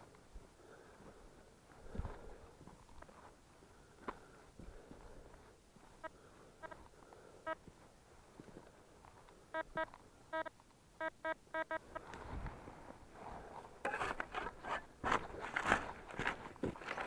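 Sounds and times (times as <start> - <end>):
metal detector beeps: 9.5 - 12.0.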